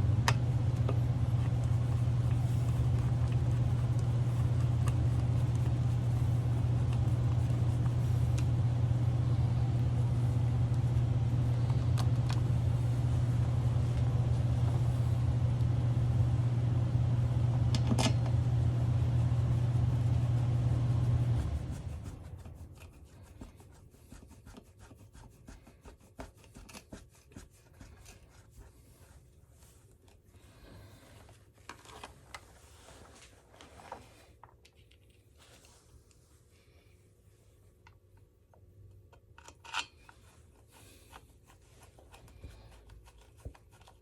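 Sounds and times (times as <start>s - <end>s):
motor humming: 0.0s - 23.0s.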